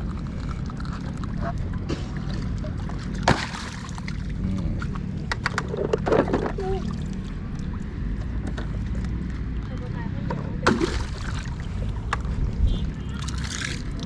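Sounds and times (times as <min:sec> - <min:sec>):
low hum: 0:00.0 - 0:09.6
water sloshing and splashing: 0:00.0 - 0:14.0.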